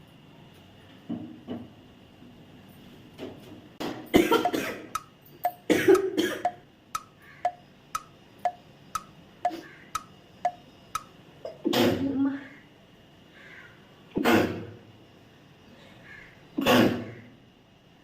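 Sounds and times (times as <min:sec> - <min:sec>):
person coughing: 0:04.2 - 0:04.8, 0:05.7 - 0:06.6.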